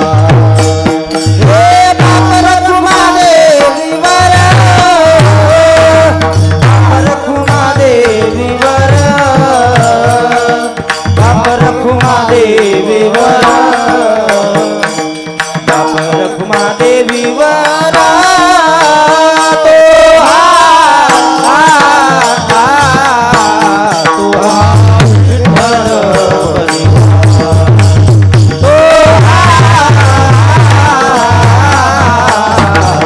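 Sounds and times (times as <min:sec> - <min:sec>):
drum beats: 0:00.0 - 0:33.0
person singing melody: 0:00.0 - 0:33.0.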